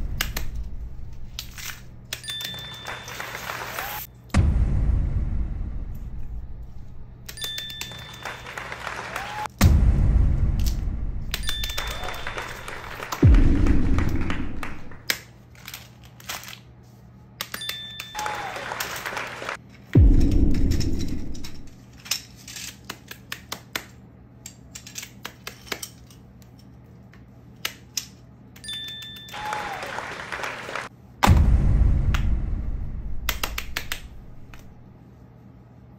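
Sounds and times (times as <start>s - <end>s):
heavy low thud: 4.4s - 6.6s, 9.6s - 11.3s, 13.2s - 15.0s, 20.0s - 21.7s, 31.2s - 33.4s.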